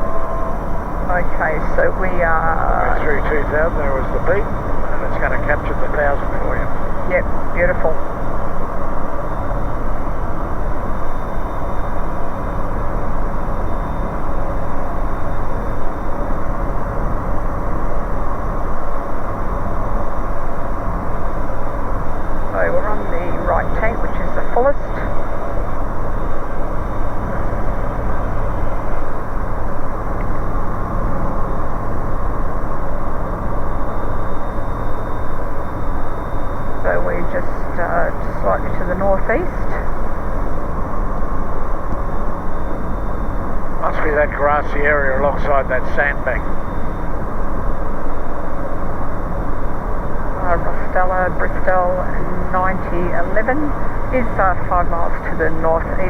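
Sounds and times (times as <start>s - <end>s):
light aircraft engine drone: 0.0s - 56.0s.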